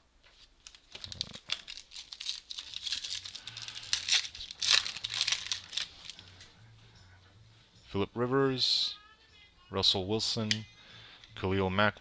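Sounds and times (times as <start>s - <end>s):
wrapper being torn and crinkled: 0.6s - 6.4s.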